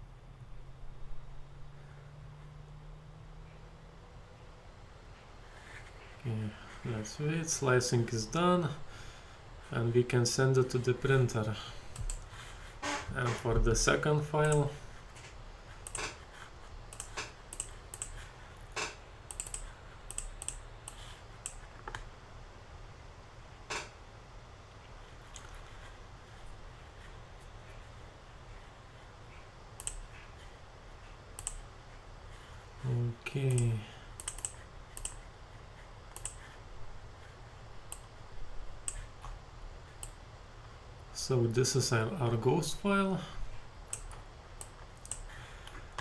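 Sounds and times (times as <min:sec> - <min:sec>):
faint low hum: 0:00.0 - 0:46.0
mouse and keyboard clicks: 0:12.0 - 0:12.3, 0:14.4 - 0:16.3, 0:16.9 - 0:22.1, 0:31.4 - 0:31.7, 0:33.5 - 0:35.2, 0:36.1 - 0:36.5, 0:43.9 - 0:45.8.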